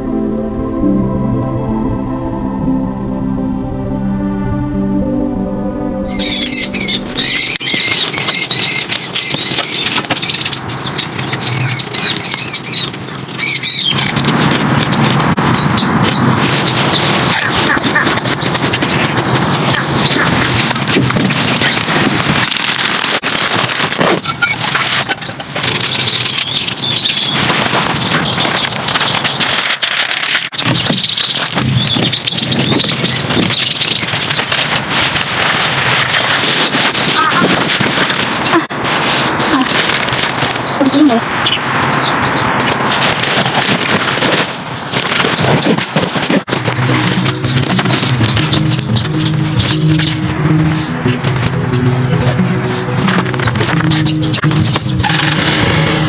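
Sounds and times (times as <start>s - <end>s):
birds squawking chirps: 6.1s - 14.2s, 30.6s - 38.7s, 44.7s - 55.8s.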